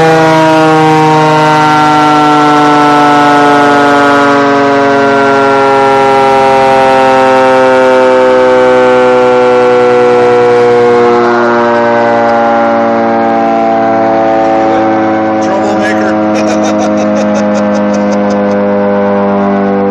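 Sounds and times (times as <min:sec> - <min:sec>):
air raid siren winding down: 0:00.0 - 0:19.9.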